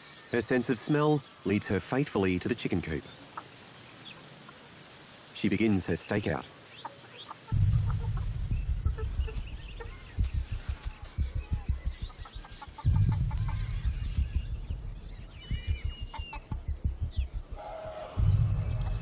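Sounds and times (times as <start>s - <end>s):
chickens clucking: 3.2s - 4.7s, 6.7s - 17.8s
small birds chirping and whistling: 5.5s - 19.0s
low pulsing music: 7.5s - 19.0s.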